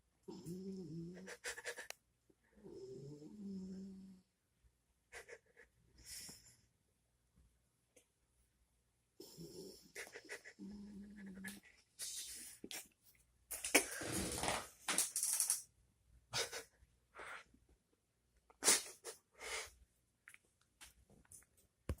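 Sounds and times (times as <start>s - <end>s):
dog snoring: 2.6s - 4.2s.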